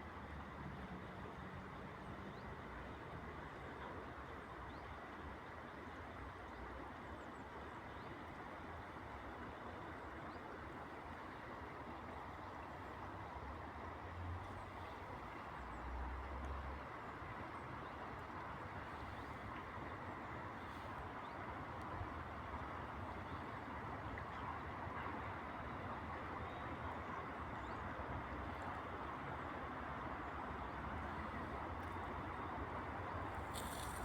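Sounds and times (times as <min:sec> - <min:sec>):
distant city traffic hum: 0:00.0 - 0:34.0.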